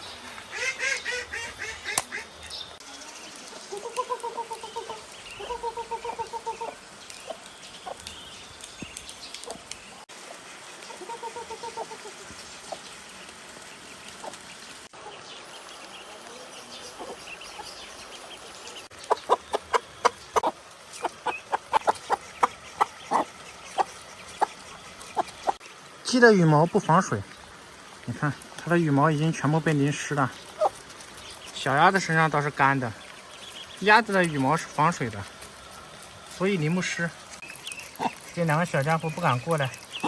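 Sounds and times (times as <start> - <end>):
hen clucking: 3.7 - 8.1, 10.9 - 12.9, 18.9 - 25.6, 30.5 - 30.8.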